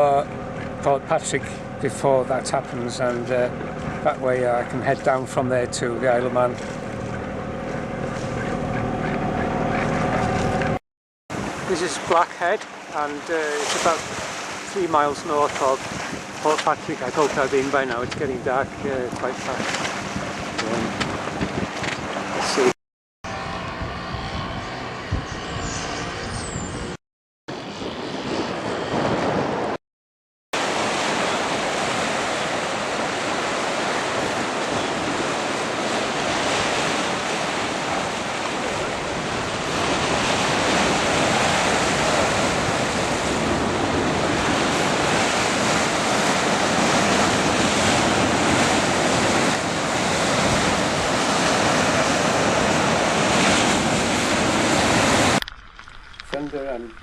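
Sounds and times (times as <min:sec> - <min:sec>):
wind and sea noise: 0:00.0 - 0:29.8, 0:30.6 - 0:57.0
heavy rain and wind: 0:07.8 - 0:22.7, 0:30.6 - 0:57.0.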